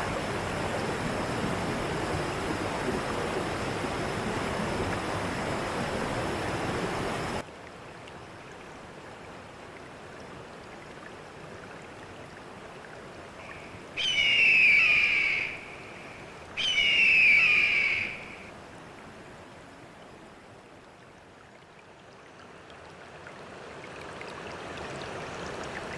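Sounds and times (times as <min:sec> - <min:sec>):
water rushing: 0:00.0 - 0:21.7, 0:22.5 - 0:25.9
faint hiss: 0:11.4 - 0:21.3
loud bird calls: 0:13.5 - 0:18.5.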